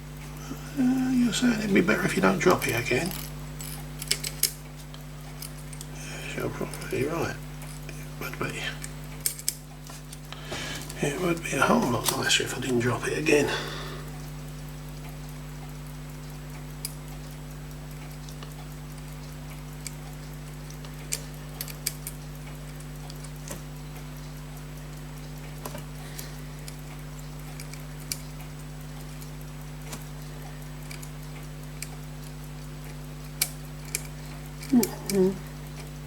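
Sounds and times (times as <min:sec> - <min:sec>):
low electrical hum: 0:00.0 - 0:36.0
small metal parts clicking: 0:02.2 - 0:08.1, 0:08.7 - 0:11.0, 0:20.6 - 0:23.6, 0:25.6 - 0:28.4, 0:29.1 - 0:36.0.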